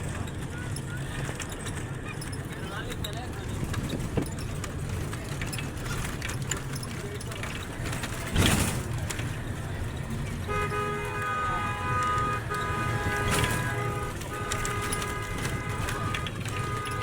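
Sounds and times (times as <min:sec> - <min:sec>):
traffic rumble: 0:00.0 - 0:17.0
vehicle horn blasts: 0:10.4 - 0:17.0.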